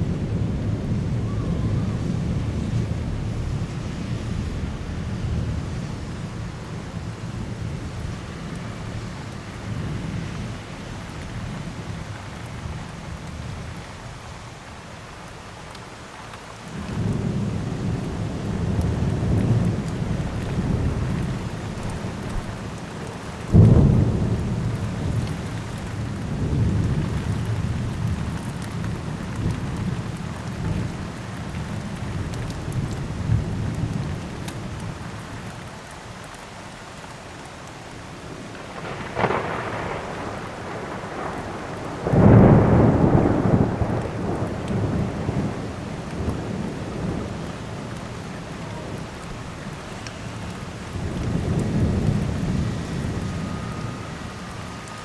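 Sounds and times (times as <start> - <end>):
thunder rumbling: 0.0 - 10.6, 16.8 - 35.2, 38.2 - 55.0
heavy rain: 0.0 - 55.0
sharp thunderclap: 23.4 - 28.3, 38.8 - 47.4.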